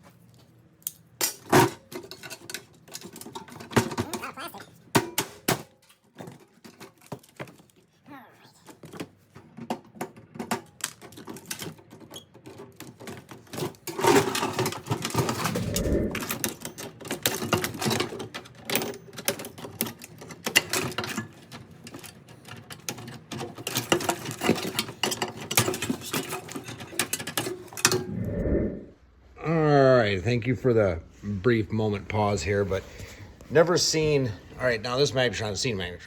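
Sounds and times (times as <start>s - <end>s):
tools clattering on sheet metal: 9.6s - 15.4s, 17.0s - 27.8s.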